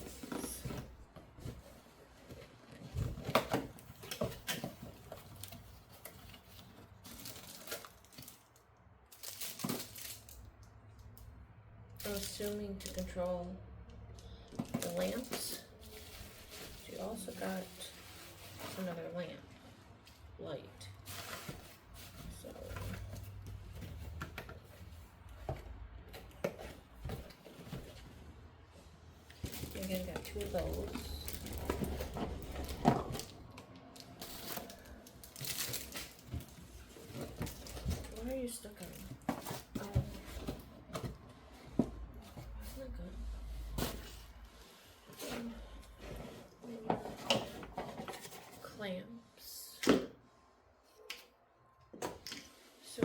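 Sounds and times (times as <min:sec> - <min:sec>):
plastic wrapping rustling: 0:00.0 - 0:10.9, 0:12.0 - 0:13.2, 0:14.4 - 0:20.1, 0:20.8 - 0:24.7, 0:29.3 - 0:41.2.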